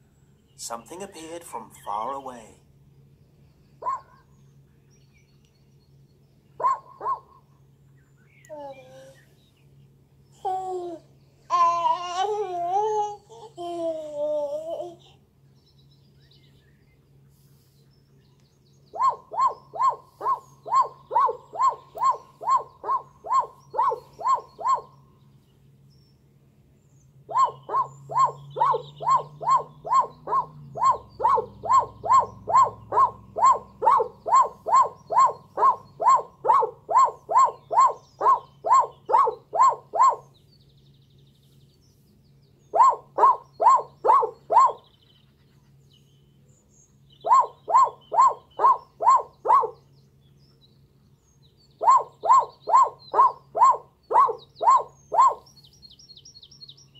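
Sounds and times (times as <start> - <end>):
animal short barking calls: 3.8 - 4.3, 6.6 - 7.4, 18.9 - 25.0, 27.3 - 40.3, 42.7 - 44.8, 47.2 - 49.8, 51.8 - 55.5.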